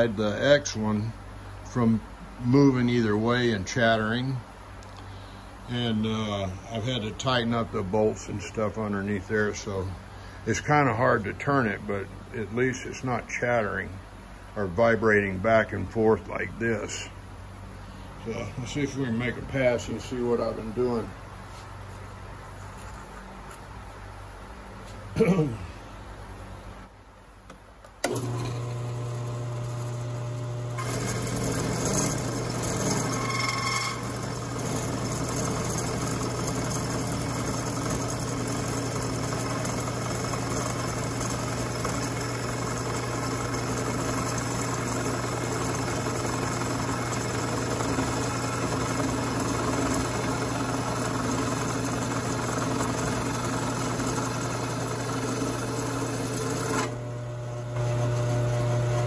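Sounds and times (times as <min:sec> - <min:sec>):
drill press motor hum: 0:27.5 - 0:59.0
end mill grinding metal: 0:28.0 - 0:59.0.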